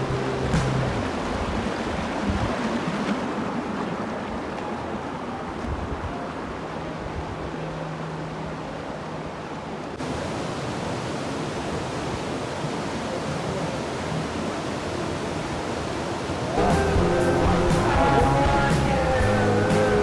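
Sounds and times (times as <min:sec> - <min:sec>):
waterfall rushing: 0:00.0 - 0:05.5, 0:09.9 - 0:20.0.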